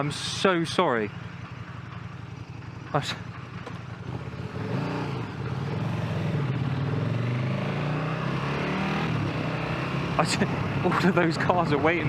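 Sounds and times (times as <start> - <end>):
motorcycle engine revving through gears: 1.4 - 12.0.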